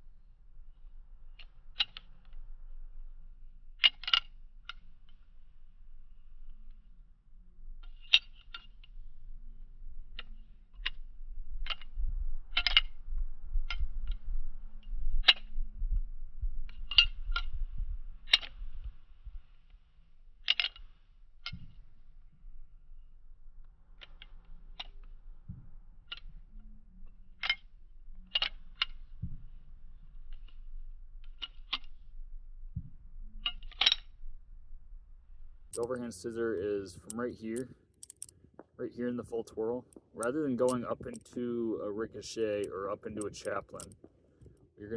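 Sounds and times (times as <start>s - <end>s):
butterfly knife clacking: 37.0s - 38.4s, 43.2s - 44.0s.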